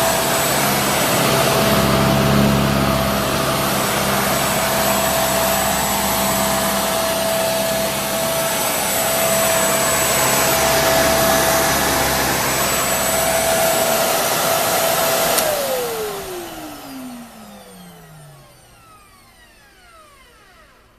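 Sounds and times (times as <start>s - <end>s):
motor winding down: 0.0s - 20.9s
vacuum cleaner whining: 0.0s - 20.9s
switch click: 15.3s - 15.7s.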